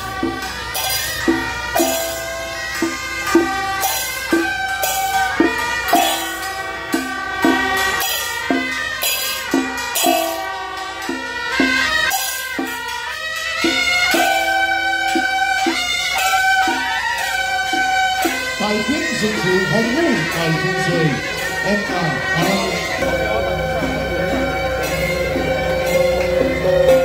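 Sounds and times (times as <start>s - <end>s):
held melody line: 0.0s - 12.8s, 13.4s - 27.0s
struck pitched percussion: 0.0s - 27.0s.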